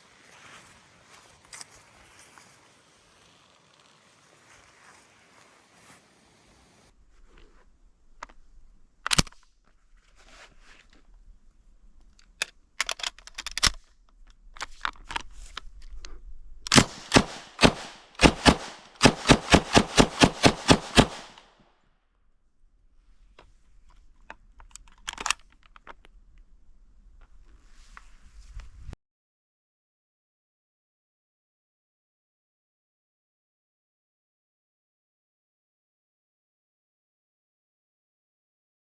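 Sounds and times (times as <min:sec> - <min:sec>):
submachine gun shots: 0:16.7 - 0:21.4.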